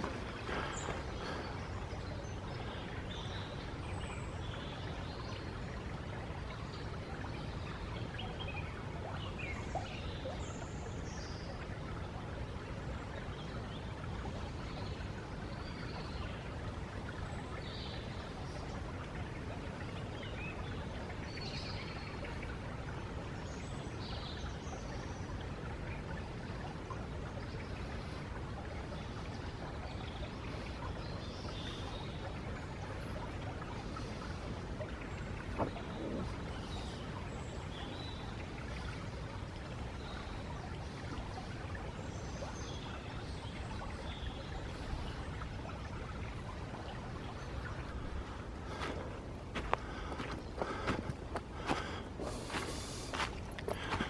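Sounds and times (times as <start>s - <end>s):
birds singing: 0.0s - 12.0s, 27.3s - 54.0s
stream water flowing: 0.0s - 54.0s.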